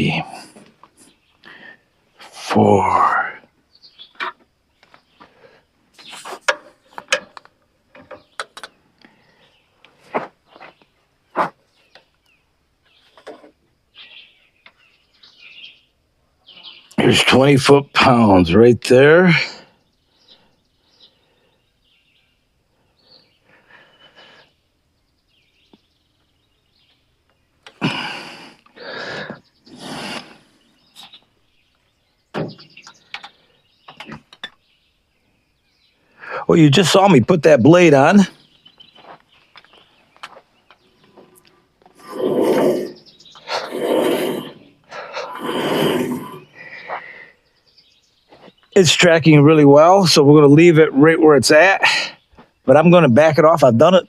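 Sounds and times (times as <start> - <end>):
faint bird chirps: 0.0 - 7.0, 8.0 - 49.4.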